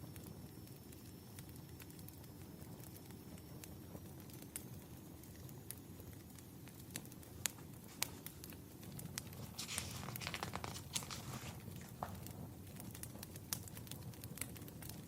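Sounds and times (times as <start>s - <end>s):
soft steady hiss: 0.0s - 15.0s
wood fire crackling: 0.0s - 15.0s.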